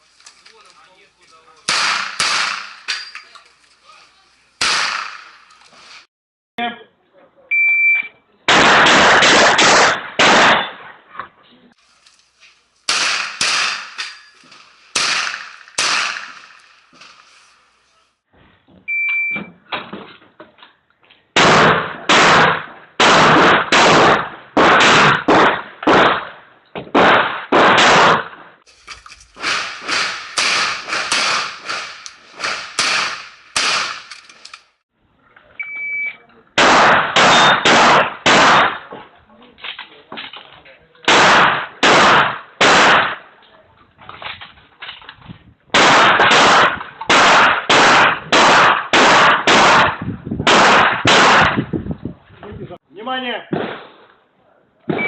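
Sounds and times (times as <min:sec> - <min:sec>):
shotgun fire: 0:01.7 - 0:03.0, 0:04.6 - 0:06.0, 0:08.5 - 0:10.9, 0:12.9 - 0:17.3, 0:21.4 - 0:28.5, 0:29.4 - 0:34.2, 0:36.6 - 0:39.0, 0:41.1 - 0:43.3, 0:45.7 - 0:51.7, 0:53.5 - 0:54.0
shot timer beep: 0:07.5 - 0:08.1, 0:18.9 - 0:19.5, 0:35.6 - 0:36.2.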